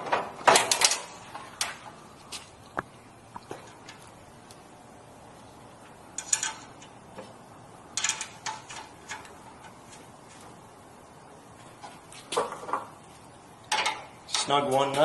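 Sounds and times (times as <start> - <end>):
metal panel clicks and clatter: 0.0 - 1.8.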